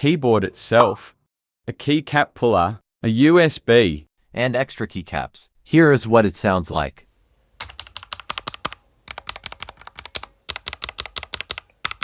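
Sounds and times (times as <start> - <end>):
keyboard keystroke clicks: 7.6 - 12.0.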